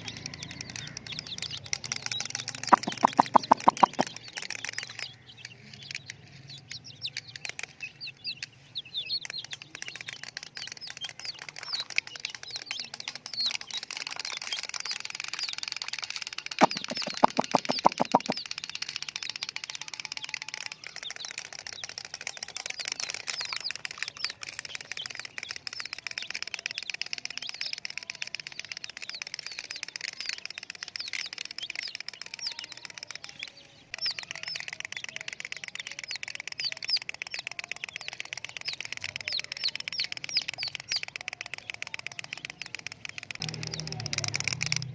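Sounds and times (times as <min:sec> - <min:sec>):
loud fast rattle: 0:00.0 - 0:05.2, 0:09.2 - 0:33.1
chicks peeping: 0:00.0 - 0:44.9.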